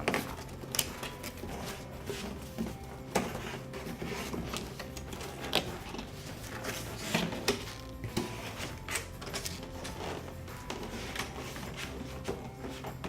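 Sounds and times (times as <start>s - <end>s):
cardboard rustling and folding: 0.0s - 13.0s.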